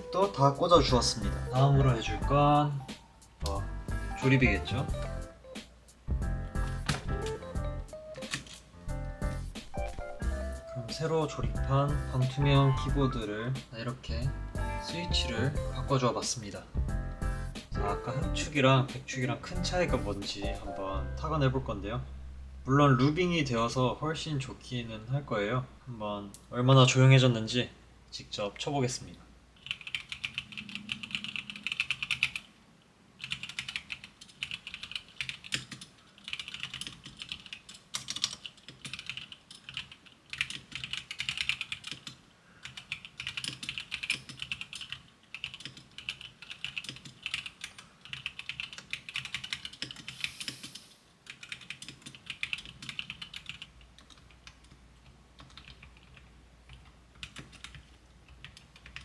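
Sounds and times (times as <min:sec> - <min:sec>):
mechanical keyboard typing: 0:06.6 - 0:08.7, 0:29.6 - 0:32.5, 0:33.2 - 0:59.0.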